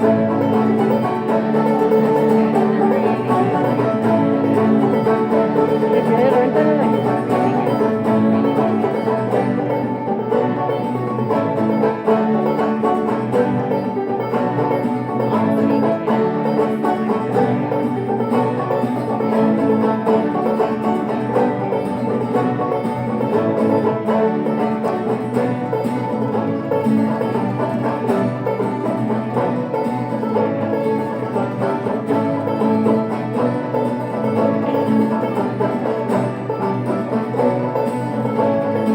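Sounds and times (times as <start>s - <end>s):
banjo and mandolin music: 0.0s - 38.9s.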